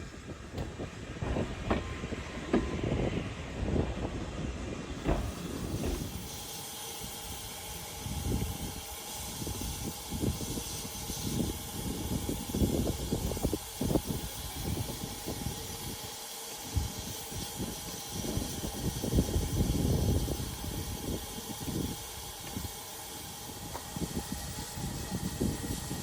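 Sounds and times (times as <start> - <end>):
steam locomotive hissing: 0.0 - 26.0
low thumps and rumbles: 0.4 - 3.0, 5.0 - 6.3.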